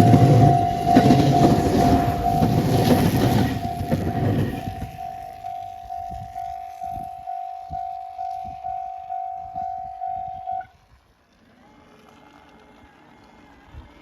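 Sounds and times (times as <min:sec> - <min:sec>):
level-crossing warning bell ringing: 0:00.0 - 0:10.7.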